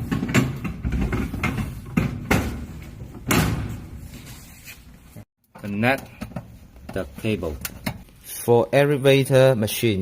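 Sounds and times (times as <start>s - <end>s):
metal tray knocks and clunks: 0.0s - 3.8s.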